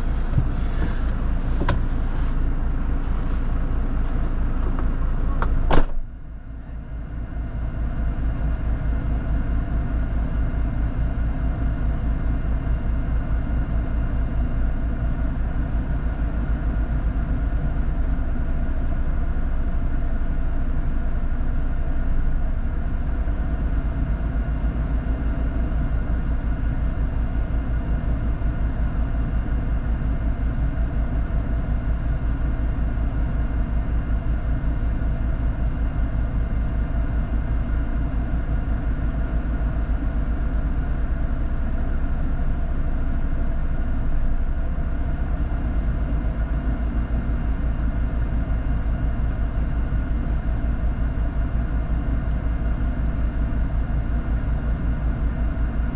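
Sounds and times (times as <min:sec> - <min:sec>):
off-road vehicle engine running: 0:00.0 - 0:06.8.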